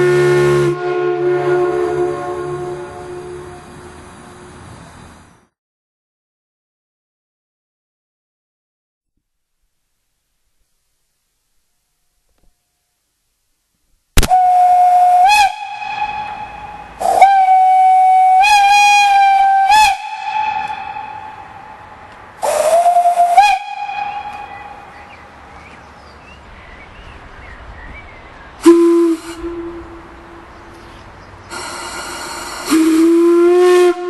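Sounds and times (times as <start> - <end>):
steam whistle toots: 0.0 - 4.0, 14.2 - 24.9, 28.6 - 30.4, 31.4 - 34.0
lower-pitched whistle: 28.6 - 30.0, 31.5 - 34.0.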